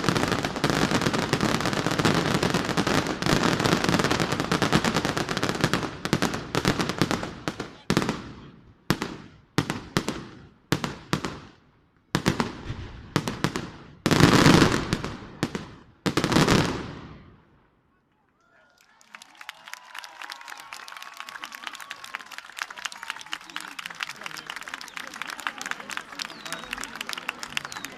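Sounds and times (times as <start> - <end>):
fireworks cracking and banging: 0.0 - 17.4.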